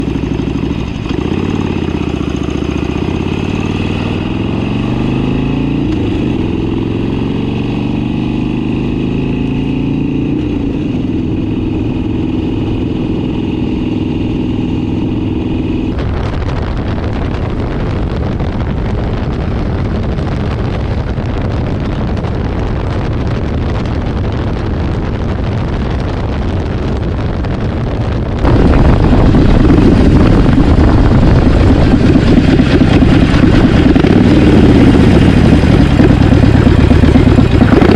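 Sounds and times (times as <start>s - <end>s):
engine running: 0.0s - 37.9s
rough noisy rush: 9.4s - 37.9s.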